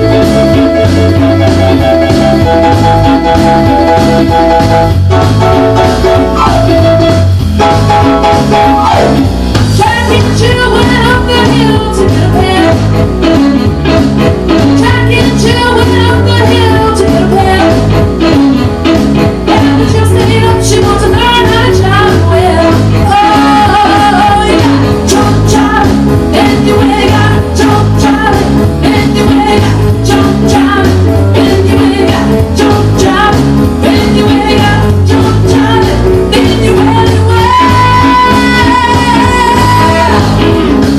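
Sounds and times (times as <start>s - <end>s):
electric guitar: 0.0s - 40.9s
steady drum beat: 0.0s - 40.9s
person singing: 19.5s - 40.9s.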